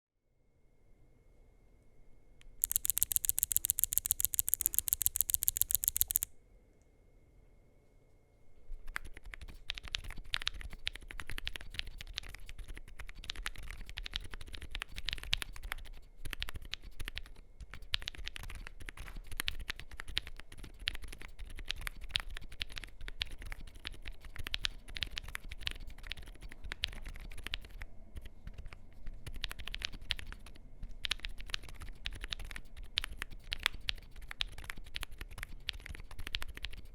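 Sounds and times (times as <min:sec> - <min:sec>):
rapid sharp clicks: 0:02.4 - 0:06.3
soft muted keyboard key presses: 0:02.6 - 0:06.3, 0:09.0 - 0:36.9.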